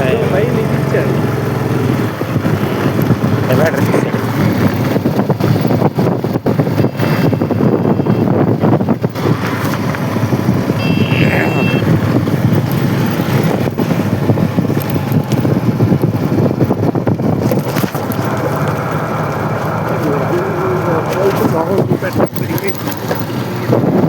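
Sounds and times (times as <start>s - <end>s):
vehicle rumble: 0.0s - 24.0s
wind buffeting microphone: 0.0s - 24.0s
brief high tone: 10.8s - 11.9s.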